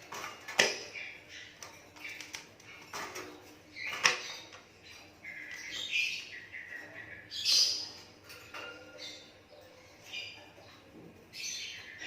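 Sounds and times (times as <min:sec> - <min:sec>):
starling chattering and clicking: 0:01.4 - 0:03.3.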